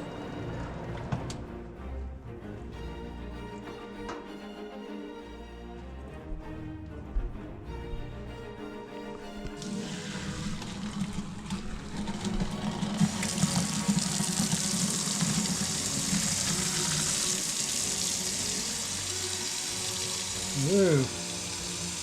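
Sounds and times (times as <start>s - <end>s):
water pouring into sink: 9.6s - 22.0s.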